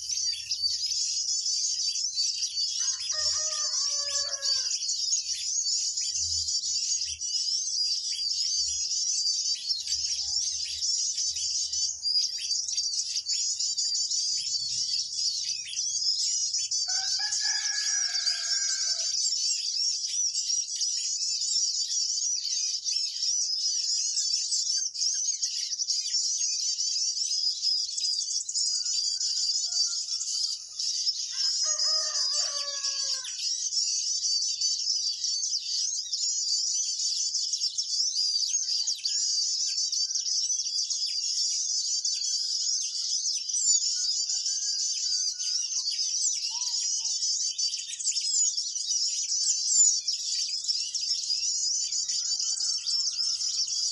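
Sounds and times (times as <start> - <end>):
small birds chirping: 0.0 - 53.9
rooster crowing: 2.7 - 4.9, 16.8 - 19.3, 28.7 - 33.5, 44.0 - 45.9, 51.9 - 53.9.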